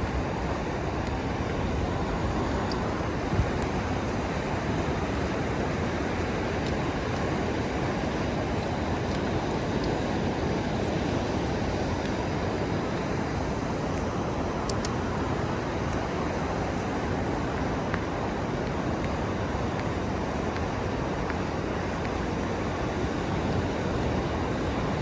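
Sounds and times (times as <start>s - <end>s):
ocean surf roaring: 0.0s - 25.0s
wind on microphone: 0.0s - 25.0s.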